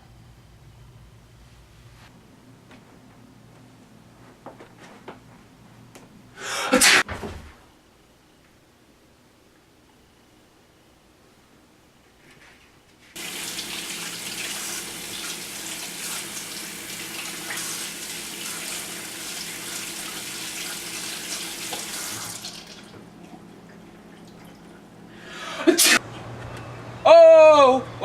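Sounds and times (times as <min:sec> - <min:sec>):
running water rushing: 0:13.2 - 0:24.9.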